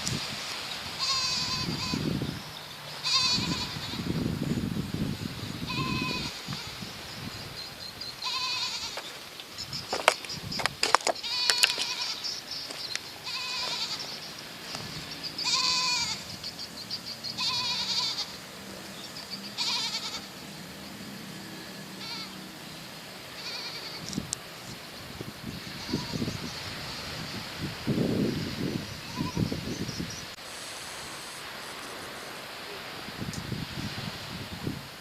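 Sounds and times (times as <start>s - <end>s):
animal quavering high call: 15.4s - 18.5s, 19.3s - 20.5s, 21.3s - 22.5s.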